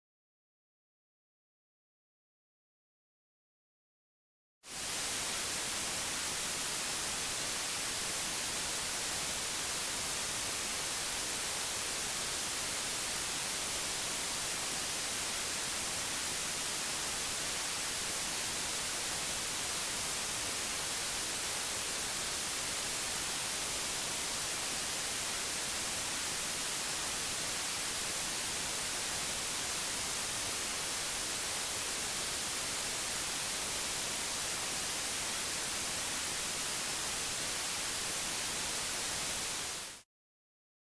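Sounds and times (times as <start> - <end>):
television static hiss: 4.7 - 40.0.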